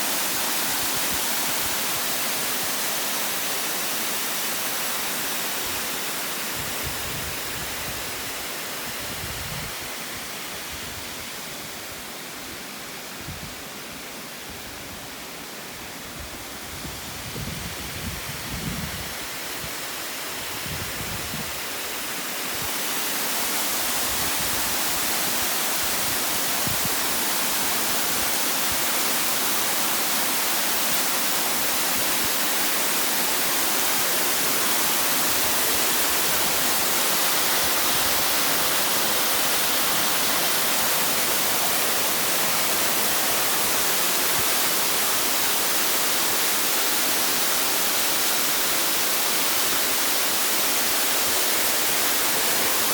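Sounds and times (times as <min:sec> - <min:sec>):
waterfall rushing: 0:00.0 - 0:52.9.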